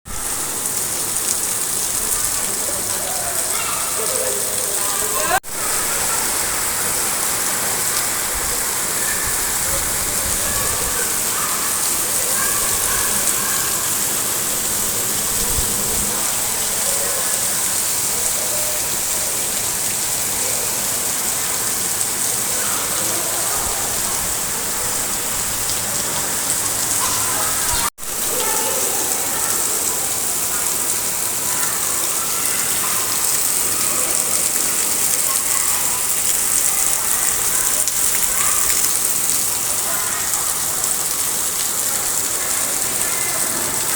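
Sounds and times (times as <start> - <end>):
heavy rain pouring: 0.0 - 43.9
strong wind gusts: 5.4 - 11.7, 14.6 - 16.8.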